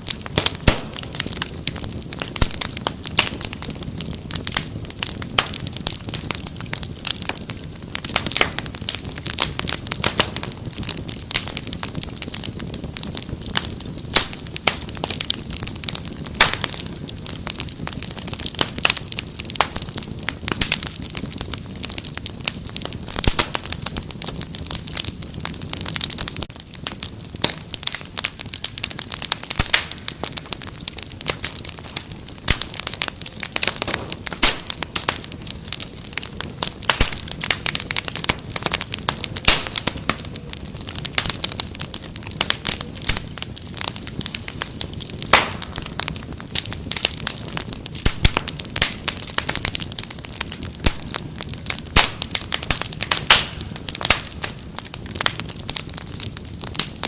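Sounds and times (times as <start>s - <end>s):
rumble of flames: 0.0s - 57.0s
wood fire crackling: 0.0s - 57.0s
sharp pops and snaps: 0.4s - 1.4s, 2.2s - 3.4s, 29.3s - 35.3s, 36.0s - 41.6s, 42.4s - 55.5s.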